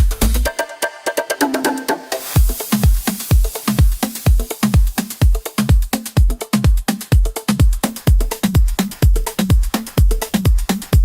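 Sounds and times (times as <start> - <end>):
kick drum: 0.0 - 0.6, 2.4 - 11.0
dance music: 0.0 - 11.0
rising hiss: 1.4 - 6.2.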